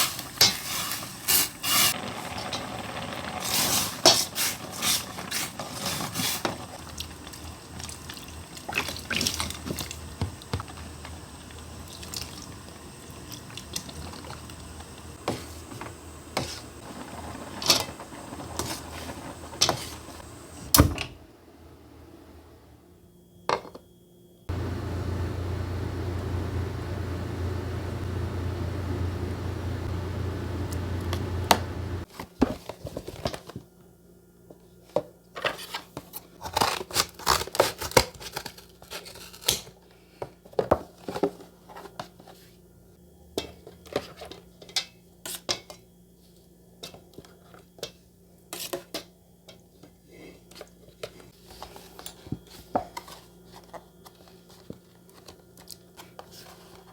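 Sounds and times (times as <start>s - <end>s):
clicks and light knocks: 30.6s - 32.0s.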